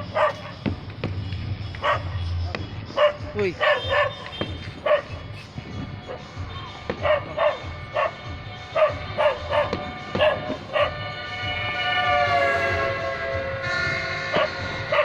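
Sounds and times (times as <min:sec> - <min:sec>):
dog barking: 0:00.0 - 0:00.8, 0:01.7 - 0:06.3, 0:06.9 - 0:13.2, 0:13.9 - 0:15.0
long steady horn-like tone: 0:03.6 - 0:15.0.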